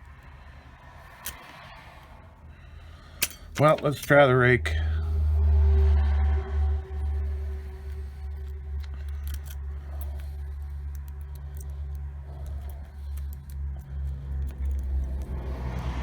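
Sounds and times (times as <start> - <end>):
steady low hum: 0.0 - 16.0
lock pick clicking and scraping: 1.0 - 1.6, 3.1 - 4.3, 7.4 - 15.6.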